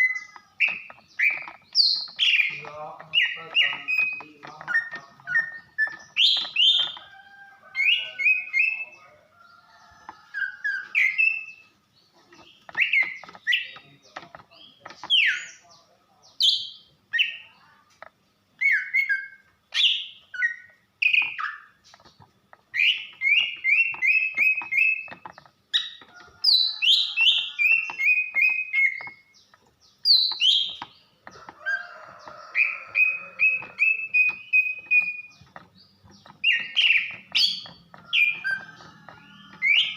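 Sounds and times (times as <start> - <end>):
bird whistling and chirping: 0.0 - 7.0, 7.7 - 8.9, 10.3 - 11.7, 12.7 - 13.8, 18.6 - 21.7, 22.7 - 29.3, 30.0 - 30.9, 31.6 - 35.6, 36.2 - 39.9.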